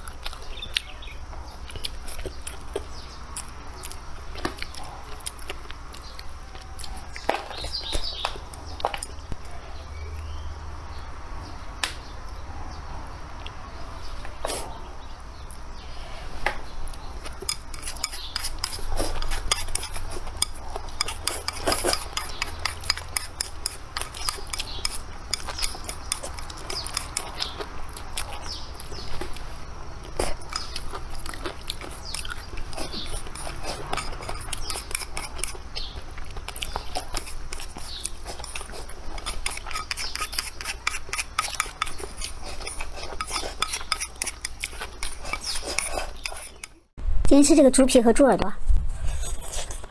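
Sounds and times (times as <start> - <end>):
chopsticks clicking on bowls: 17.4 - 27.6.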